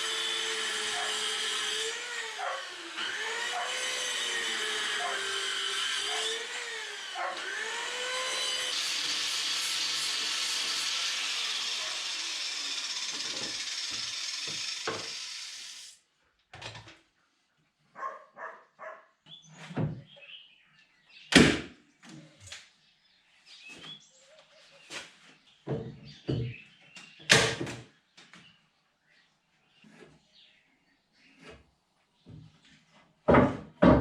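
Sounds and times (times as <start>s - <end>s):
power tool running with hiss: 0.0s - 16.0s.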